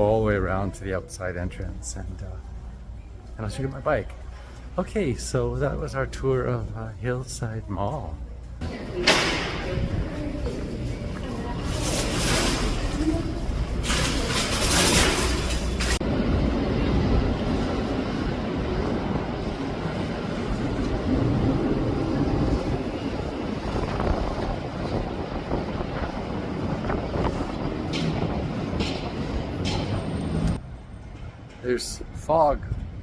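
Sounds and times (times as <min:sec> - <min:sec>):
wind buffeting microphone: 0:09.5 - 0:10.9, 0:16.0 - 0:30.2.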